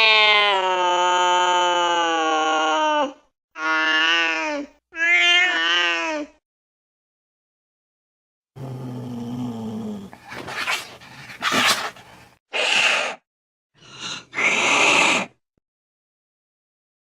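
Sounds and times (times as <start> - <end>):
cat growling: 8.6 - 12.2
cat hissing and spitting: 10.0 - 13.2.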